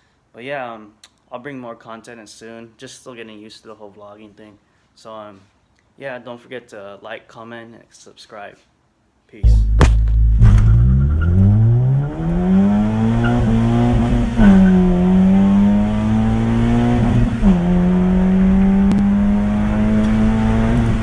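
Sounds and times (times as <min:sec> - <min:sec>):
car engine accelerating hard: 0:09.6 - 0:21.0.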